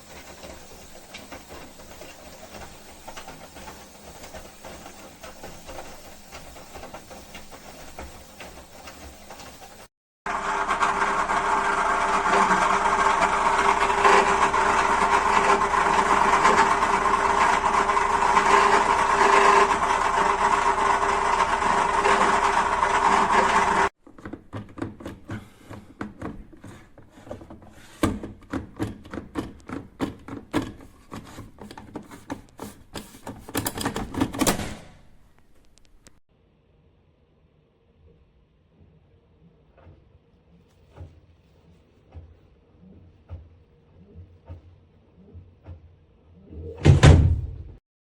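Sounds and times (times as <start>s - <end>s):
washing machine hum and whine: 0.0s - 24.0s.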